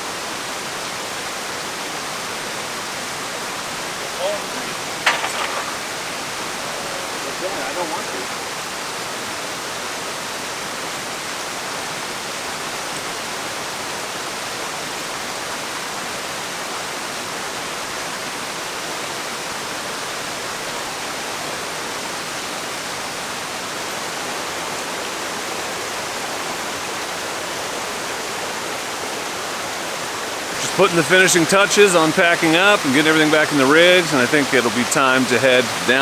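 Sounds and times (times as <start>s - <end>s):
waterfall rushing: 0.0s - 36.0s.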